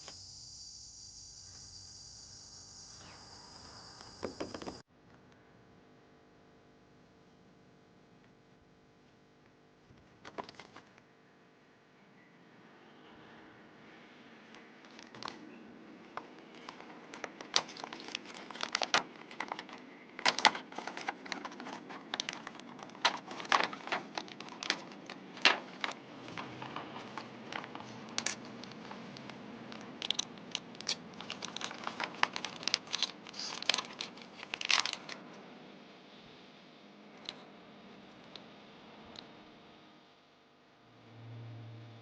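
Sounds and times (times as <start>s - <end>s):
packaging crinkling and tearing: 16.5s - 35.2s.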